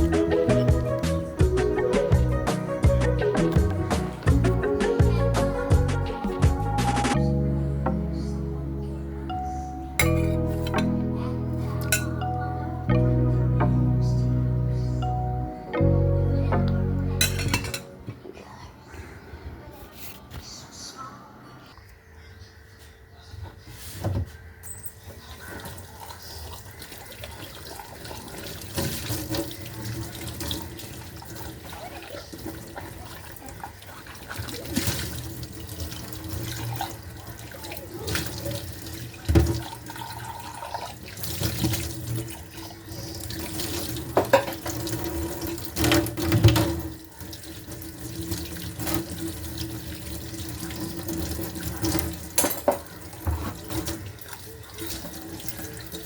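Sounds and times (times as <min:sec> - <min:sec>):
water running from tap: 0:25.5 - 0:56.0.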